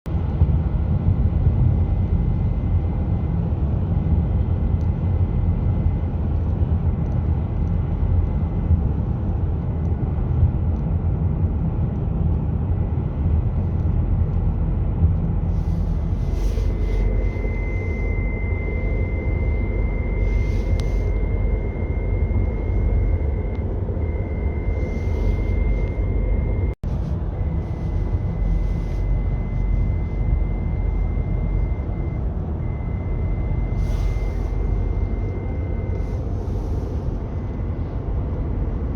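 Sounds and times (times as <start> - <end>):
road and engine rumble: 0.1 - 38.9
high-pitched whistle: 16.2 - 26.8, 27.6 - 36.6.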